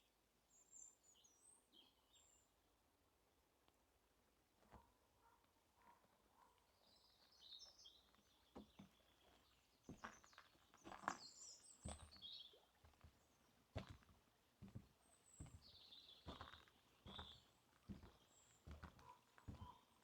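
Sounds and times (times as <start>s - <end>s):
faint footsteps on forest path: 4.6s - 20.0s
small birds chirping: 6.4s - 20.0s.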